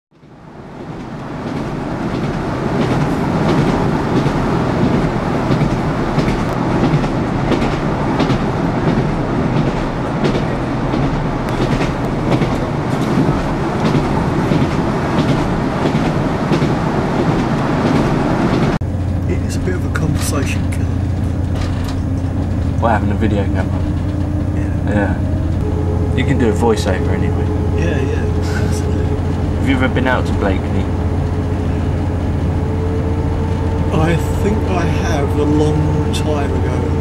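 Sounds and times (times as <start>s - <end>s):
train rumble inside carriage: 0.2s - 37.0s
wheels clicking over rail joints: 0.8s - 24.6s.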